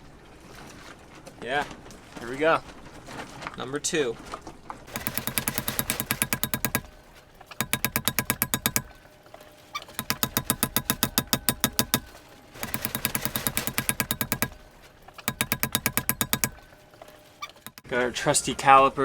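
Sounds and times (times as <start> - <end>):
rapid metal-on-metal tapping: 4.9 - 17.9.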